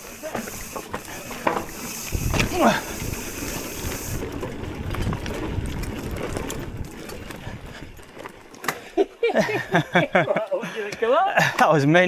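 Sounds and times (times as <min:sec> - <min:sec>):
wind hiss on microphone: 0:00.0 - 0:04.4
bike rattling and clicking: 0:00.0 - 0:11.1
bike rolling over rough ground: 0:00.0 - 0:11.2.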